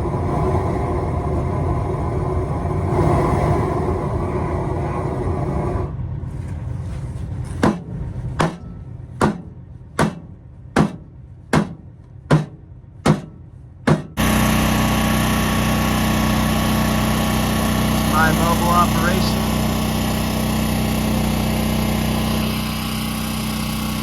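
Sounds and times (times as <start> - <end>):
loud engine drone: 0.0 - 6.2, 14.2 - 24.0
engine idling: 7.1 - 24.0
hammer striking metal: 7.6 - 14.2.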